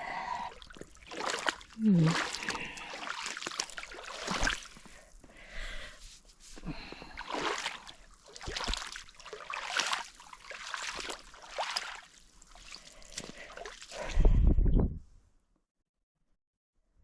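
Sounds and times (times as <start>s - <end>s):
boots splashing through puddle: 0.6s - 4.9s, 7.0s - 14.1s.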